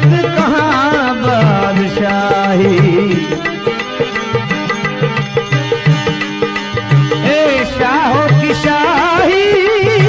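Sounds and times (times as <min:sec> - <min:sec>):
wavering melodic line: 0:00.3 - 0:08.0.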